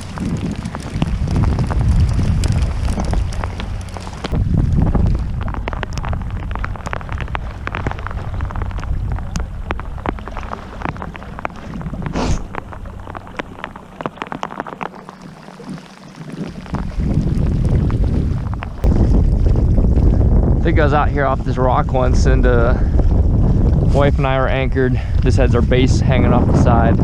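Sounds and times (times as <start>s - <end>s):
rain ticking: 0.0s - 21.3s
low wind rumble on microphone: 0.0s - 27.0s.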